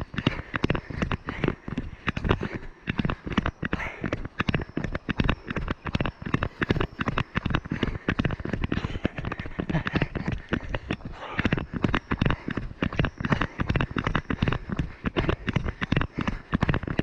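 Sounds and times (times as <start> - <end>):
footsteps running on forest trail: 0.0 - 17.0.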